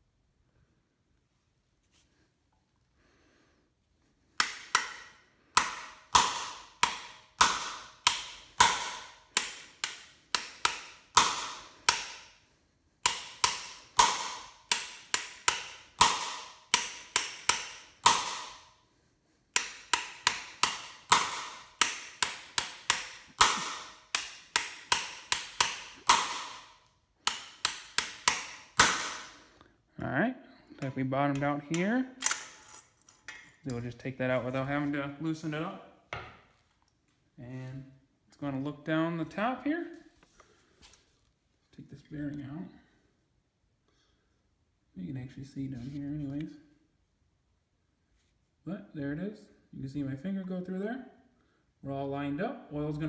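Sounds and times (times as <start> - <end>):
hammer striking metal tool: 4.4 - 12.3, 13.0 - 18.7, 19.6 - 29.4.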